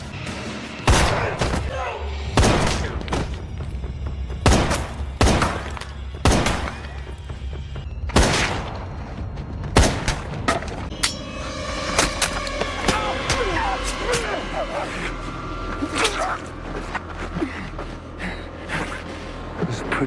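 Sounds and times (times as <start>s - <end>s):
low rumble of film score: 0.0s - 20.0s
gunshots with echoing tail: 2.4s - 3.0s, 4.4s - 6.8s, 8.1s - 8.9s, 9.8s - 10.4s.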